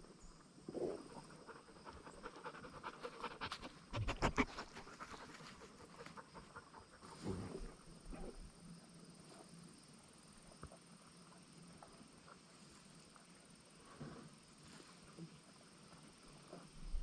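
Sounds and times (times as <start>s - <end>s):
animal noises: 0.0s - 10.0s.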